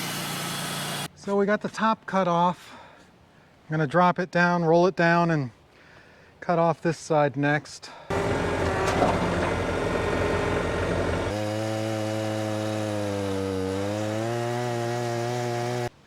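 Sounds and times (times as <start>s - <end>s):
chainsaw cutting into log: 0.0s - 1.1s, 8.1s - 15.9s.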